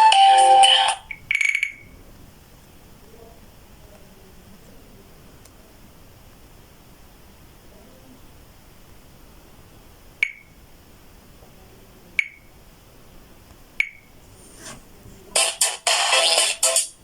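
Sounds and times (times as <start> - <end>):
ringtone music: 0.0 - 1.1, 15.4 - 17.0.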